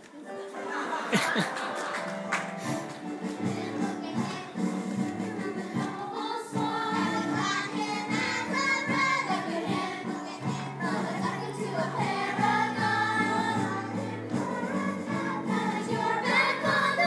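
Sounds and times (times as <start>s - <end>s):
instrumental accompaniment: 0.3s - 17.0s
voices singing a show tune: 3.4s - 17.0s.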